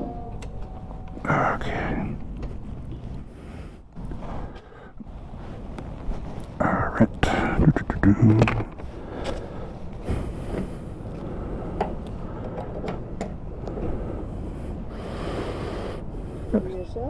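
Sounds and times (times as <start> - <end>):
fuel pump rumbling: 0.0 - 17.0
fuel nozzle clicks and knocks: 11.8 - 13.8.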